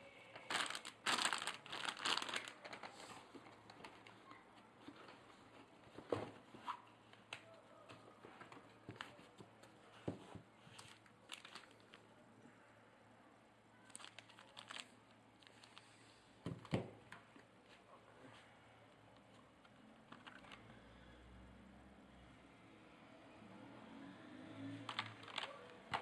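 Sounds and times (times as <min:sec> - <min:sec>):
crinkling: 0:00.3 - 0:12.1, 0:13.8 - 0:16.0, 0:24.9 - 0:26.0.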